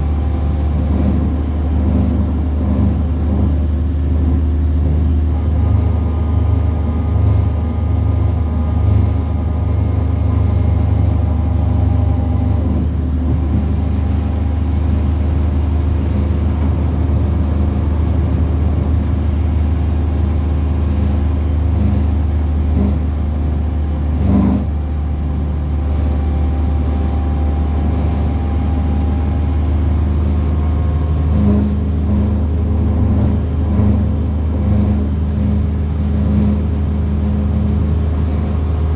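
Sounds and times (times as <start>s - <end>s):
bus engine and road rumble: 0.0s - 38.9s.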